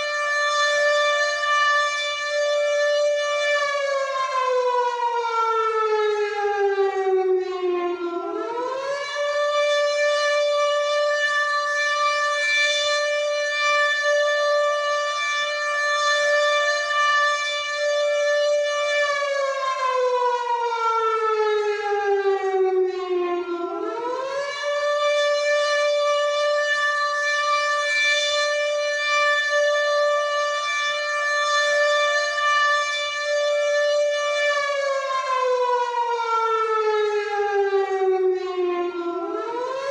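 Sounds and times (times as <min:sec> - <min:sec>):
air raid siren wailing: 0:00.0 - 0:39.9.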